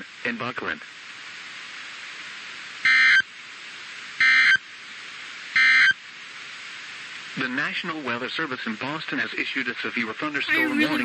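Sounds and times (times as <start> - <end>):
radio hiss: 10.5 - 11.0.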